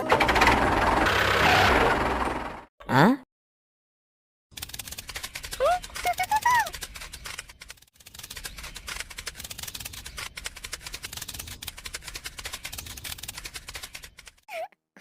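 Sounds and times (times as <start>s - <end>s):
mechanical clicking and rattling: 4.6s - 14.5s.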